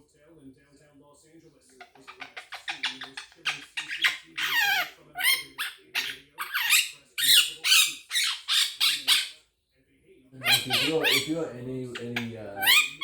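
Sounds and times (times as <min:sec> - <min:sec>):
parrot squawking and chattering: 0:01.7 - 0:09.4, 0:10.4 - 0:13.0.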